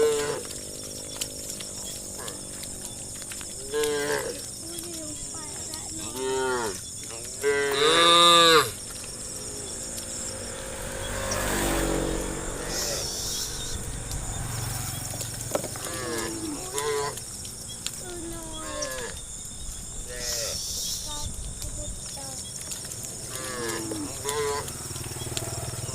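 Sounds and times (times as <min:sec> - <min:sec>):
cattle mooing: 0:00.0 - 0:04.5, 0:06.0 - 0:14.9, 0:15.7 - 0:17.2, 0:18.6 - 0:19.2, 0:20.0 - 0:20.8, 0:23.2 - 0:25.0.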